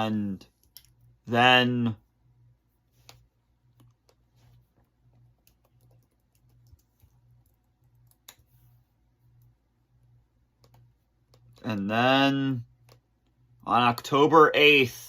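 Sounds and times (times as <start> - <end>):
faint low hum: 0.0 - 15.0
faint irregular clicks: 0.5 - 1.1, 3.0 - 11.8, 12.7 - 14.0.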